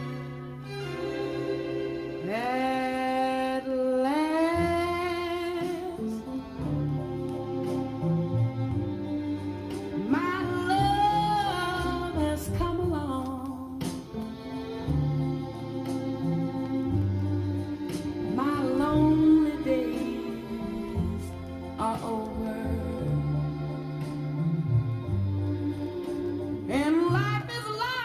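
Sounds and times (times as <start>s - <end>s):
record playing through speakers: 0.0s - 28.0s
person singing: 2.2s - 7.5s, 10.0s - 14.0s, 18.1s - 24.8s.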